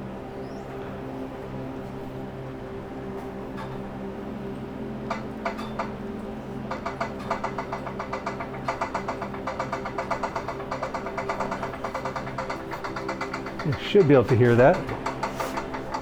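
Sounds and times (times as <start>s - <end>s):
elliptical machine hum: 0.0s - 16.0s
sharp repetitive ticking: 6.7s - 16.0s.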